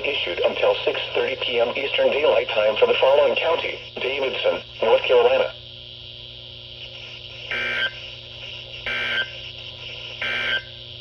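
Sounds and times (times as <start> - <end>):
broadcast hiss and hum: 0.0 - 11.0
weather radio beeps: 10.2 - 10.7.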